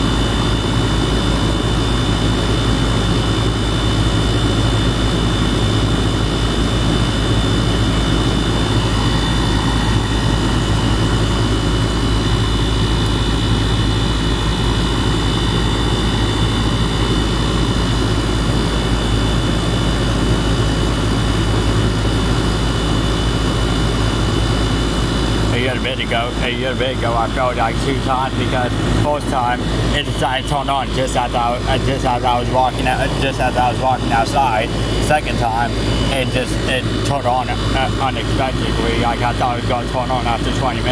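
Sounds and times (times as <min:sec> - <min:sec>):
compressor hum: 0:00.0 - 0:40.9
condenser fan rushing: 0:00.0 - 0:40.9.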